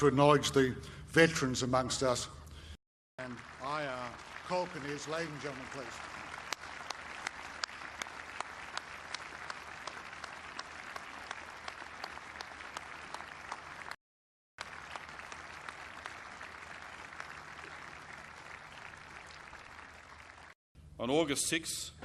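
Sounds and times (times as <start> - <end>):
crowd applauding: 3.2 - 14.0, 14.6 - 20.6.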